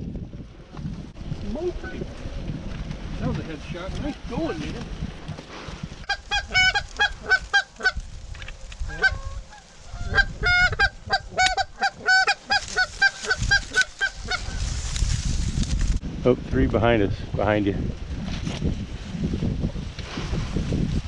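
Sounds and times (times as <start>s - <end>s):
geese honking: 6.0s - 8.0s, 8.8s - 14.8s.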